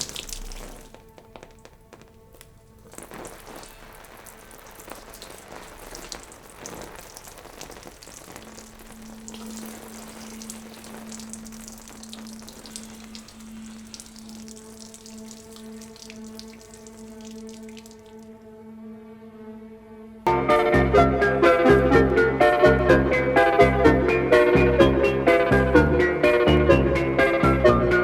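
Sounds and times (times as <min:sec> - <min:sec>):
crackling hiss with clicks: 0:00.0 - 0:18.3.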